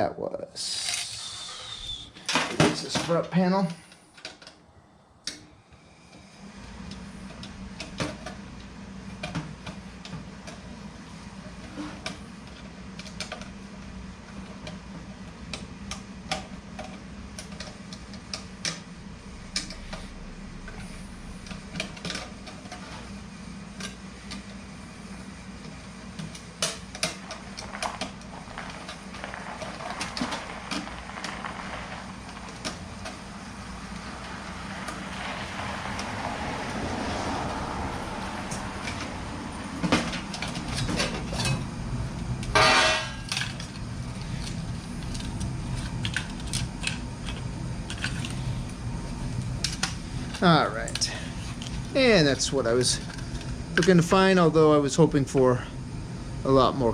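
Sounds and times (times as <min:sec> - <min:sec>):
low hum: 0:00.7 - 0:03.1, 0:03.8 - 0:56.9
tools and metal parts clinking: 0:42.5 - 0:43.8.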